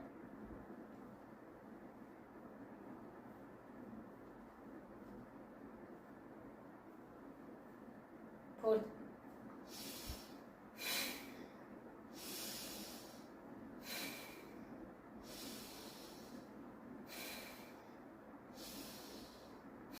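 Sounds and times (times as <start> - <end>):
woman breathing through nose: 9.6 - 20.0.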